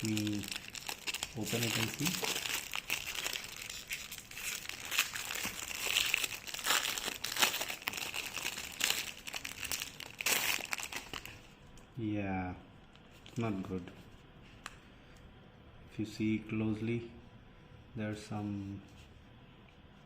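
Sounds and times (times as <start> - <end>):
packaging crinkling and rustling: 0.0 - 11.5.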